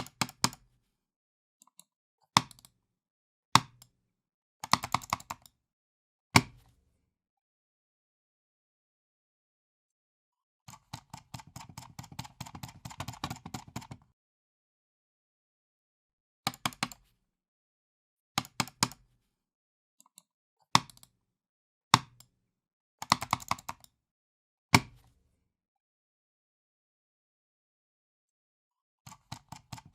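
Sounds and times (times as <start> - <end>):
computer mouse clicking: 0.0 - 0.6, 1.6 - 2.7, 4.6 - 5.5, 10.7 - 14.0, 16.5 - 17.0, 23.0 - 23.9, 29.1 - 29.9.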